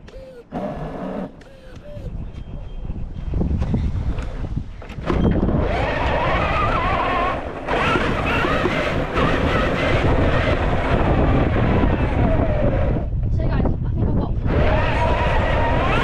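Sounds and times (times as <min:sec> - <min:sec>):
electric motor and gears whining: 0:00.0 - 0:02.4, 0:03.3 - 0:13.3, 0:14.4 - 0:16.0.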